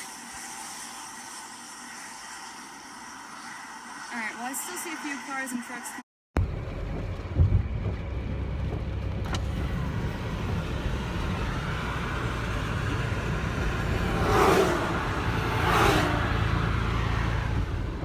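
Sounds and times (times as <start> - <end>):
road traffic rumble: 6.4 - 18.0
vehicles swishing past: 8.8 - 18.0.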